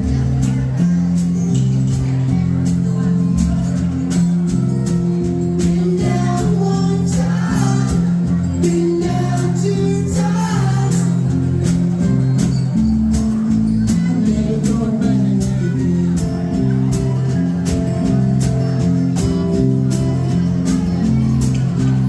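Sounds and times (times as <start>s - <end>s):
bass notes: 0.0s - 22.0s
picked guitar: 0.0s - 22.0s
person singing: 5.2s - 11.8s, 13.6s - 21.7s.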